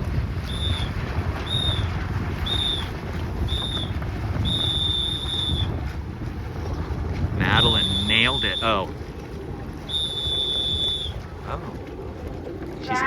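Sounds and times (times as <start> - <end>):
wind rumble on microphone: 0.0 - 13.0
long timer beep: 7.4 - 8.9
timer beeps: 7.4 - 8.9.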